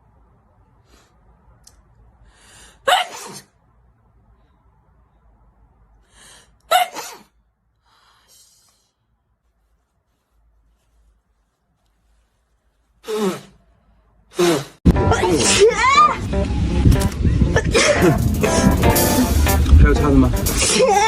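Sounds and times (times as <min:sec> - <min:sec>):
soft breath: 0:02.1 - 0:02.8, 0:04.3 - 0:06.6, 0:07.8 - 0:11.0
woman sneezing: 0:02.9 - 0:03.5, 0:06.7 - 0:07.4.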